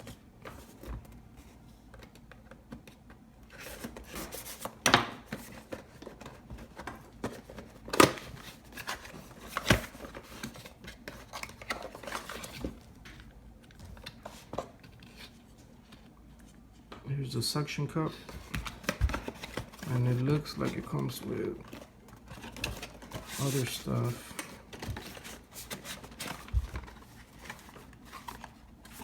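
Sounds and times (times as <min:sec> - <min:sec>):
packaging rustling and scraping: 0:02.4 - 0:16.9, 0:18.0 - 0:29.0.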